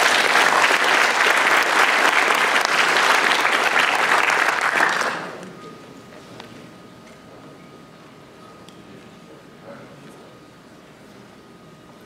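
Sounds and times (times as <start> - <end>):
audience applauding: 0.0 - 5.4.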